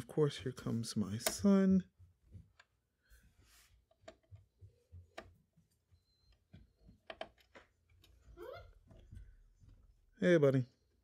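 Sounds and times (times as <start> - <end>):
screwdriver clicks and taps: 7.0 - 8.2.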